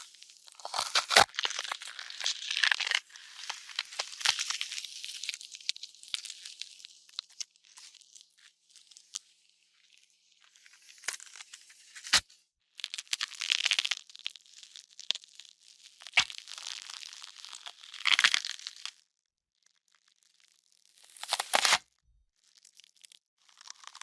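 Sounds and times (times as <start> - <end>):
wet flesh tearing and squelching: 0.5 - 5.0, 16.1 - 19.0, 21.0 - 21.8
bone cracks: 0.6 - 3.0, 17.3 - 18.9, 21.1 - 21.8.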